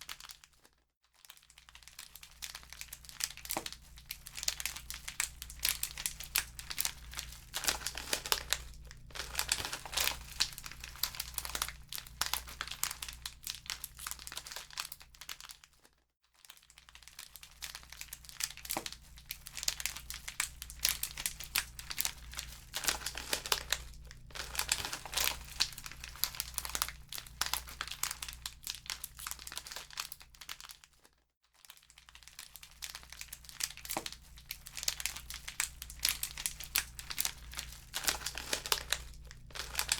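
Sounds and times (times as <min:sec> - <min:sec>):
low steady hum: 0:02.8 - 0:14.7, 0:17.7 - 0:30.0, 0:32.9 - 0:39.9
wood fire crackling: 0:04.8 - 0:12.8, 0:20.6 - 0:28.0, 0:34.7 - 0:39.9.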